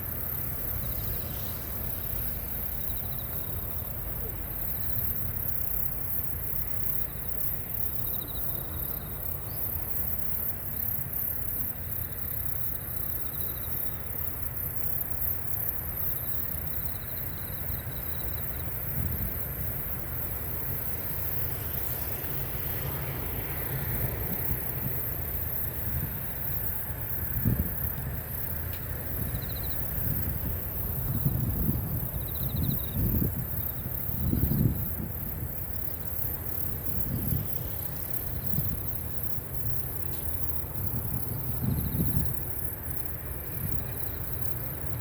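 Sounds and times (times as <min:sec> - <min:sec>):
faint insect trills: 0:00.0 - 0:45.0
steady low rumble: 0:18.6 - 0:45.0.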